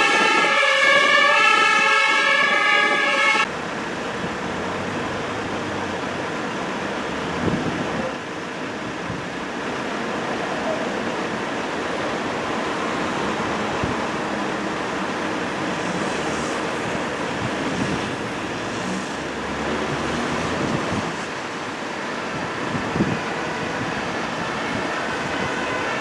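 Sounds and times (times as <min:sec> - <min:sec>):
road traffic rumble: 0:00.0 - 0:26.0.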